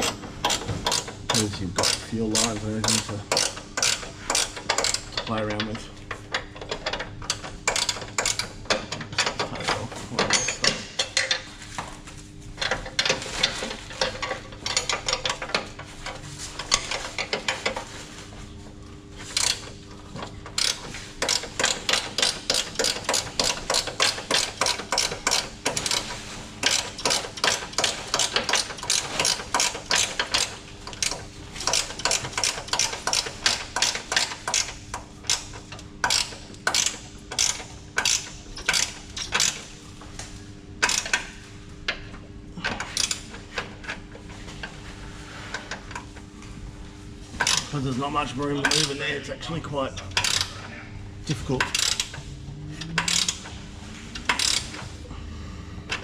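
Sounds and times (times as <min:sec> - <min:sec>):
hand ratchet clicking: 0:00.0 - 0:09.7, 0:12.6 - 0:15.7, 0:19.3 - 0:19.7, 0:20.5 - 0:39.6, 0:40.8 - 0:41.3, 0:42.6 - 0:44.0, 0:47.4 - 0:47.7, 0:48.6 - 0:49.1, 0:50.2 - 0:50.6, 0:51.6 - 0:53.6, 0:54.2 - 0:54.9.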